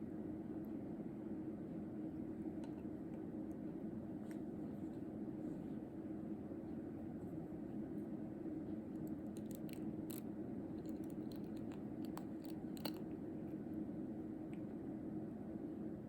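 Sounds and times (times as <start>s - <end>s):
low room hum: 0.0s - 16.0s
cat brush clicks and scratches: 9.0s - 13.1s.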